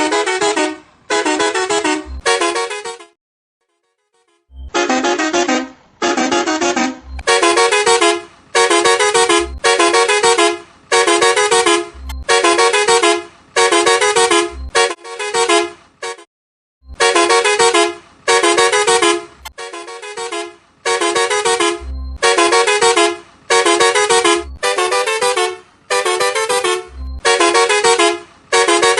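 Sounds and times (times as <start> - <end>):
musical truck horn tune: 0.0 - 3.2, 4.2 - 28.9.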